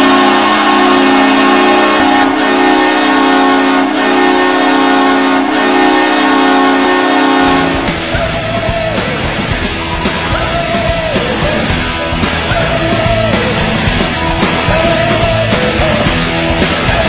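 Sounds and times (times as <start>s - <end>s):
hockey goal horn: 0.0s - 8.0s
loud rock music: 0.0s - 17.0s.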